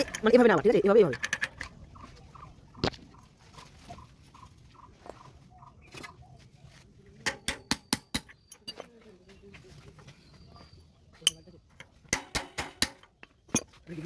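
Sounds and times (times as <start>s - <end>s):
tool striking metal hub: 7.2s - 8.8s, 12.1s - 13.7s.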